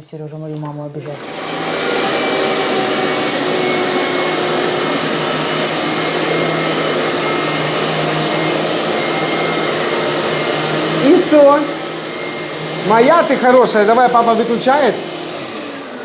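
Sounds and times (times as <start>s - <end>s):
vacuum cleaner running: 0.6s - 16.0s.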